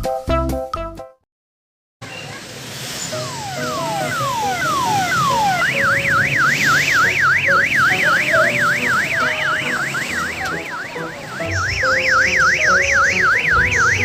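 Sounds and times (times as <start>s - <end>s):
electronic siren yelping: 3.1s - 14.0s.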